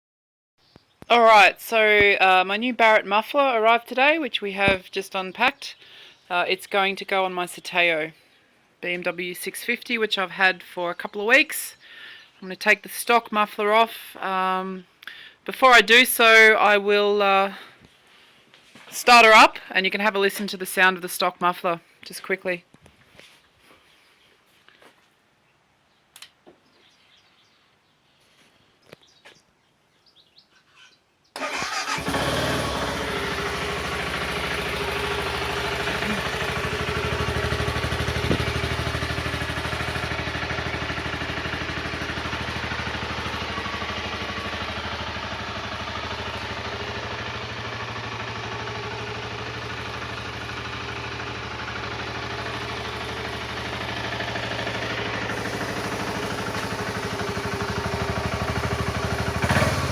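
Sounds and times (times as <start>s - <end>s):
motorcycle engine starting and idling: 31.4s - 59.9s.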